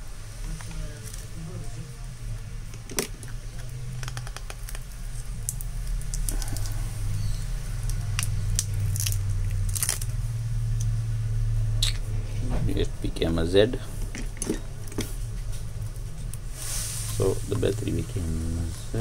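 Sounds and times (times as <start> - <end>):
steady low hum: 0.0 - 19.0
adhesive strips peeling and crackling: 3.0 - 11.0.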